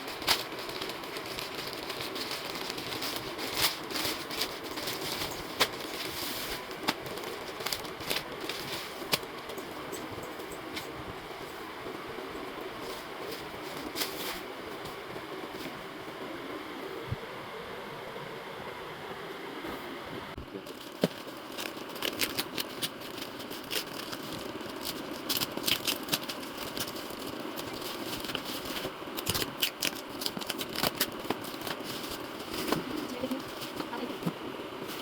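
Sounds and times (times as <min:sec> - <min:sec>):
packaging rustling and crinkling: 0:00.0 - 0:15.8, 0:20.4 - 0:35.0
sharp crackles: 0:20.7 - 0:34.1.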